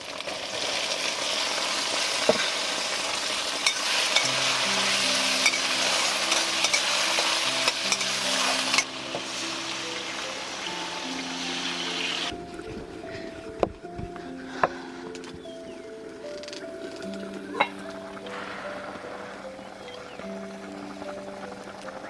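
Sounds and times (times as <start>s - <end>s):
food sizzling in a pan: 0.0s - 12.4s, 17.0s - 22.0s
soft background music: 2.8s - 22.0s.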